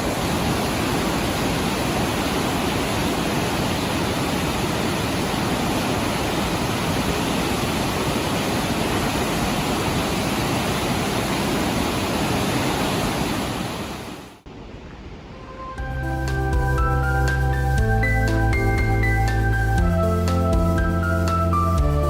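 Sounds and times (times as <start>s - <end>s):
waterfall roaring: 0.0s - 15.8s.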